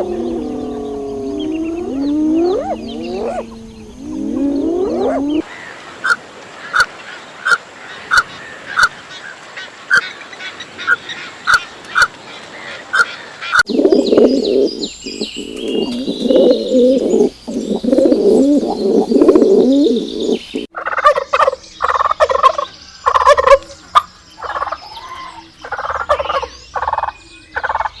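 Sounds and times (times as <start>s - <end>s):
chicken calling: 0.0s - 5.5s, 13.7s - 21.6s.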